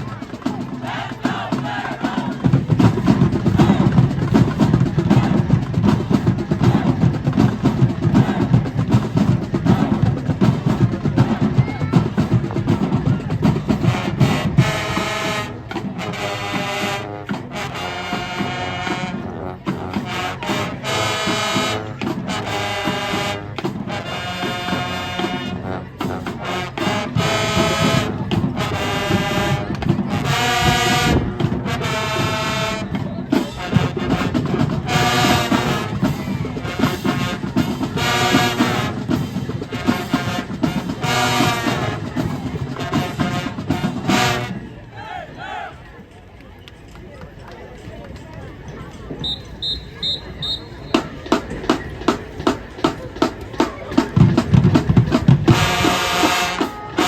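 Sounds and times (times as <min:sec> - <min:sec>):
marching band drums: 0:00.0 - 0:45.7, 0:49.1 - 0:57.0
brass playing loud held chords: 0:13.7 - 0:44.8, 0:54.8 - 0:57.0.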